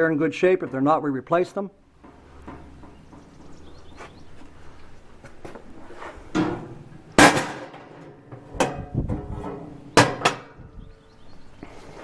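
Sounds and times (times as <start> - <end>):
metal knocks and clangs: 2.0 - 3.4, 6.3 - 10.6.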